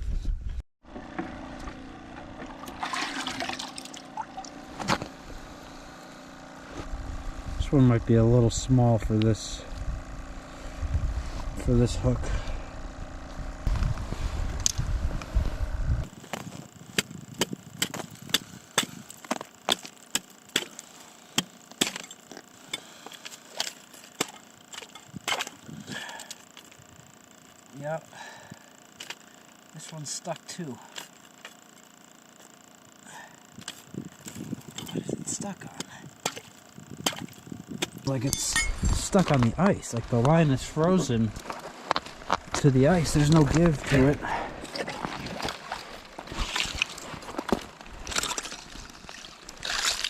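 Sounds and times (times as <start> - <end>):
water splashing in bucket: 2.5 - 4.6, 44.7 - 47.1, 48.1 - 50.0
footsteps crunching on snow: 38.7 - 50.0.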